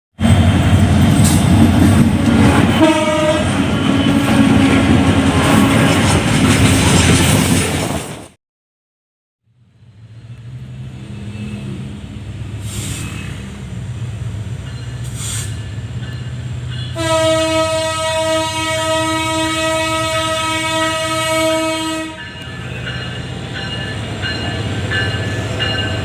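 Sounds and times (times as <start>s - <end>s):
locomotive engine and rail noise: 0.2s - 8.4s, 9.5s - 26.0s
locomotive horn blast: 2.0s - 6.2s, 16.8s - 22.4s.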